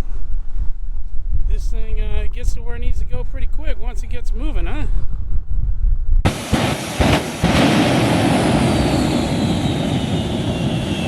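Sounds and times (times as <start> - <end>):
airplane engine passing overhead: 6.3 - 11.0.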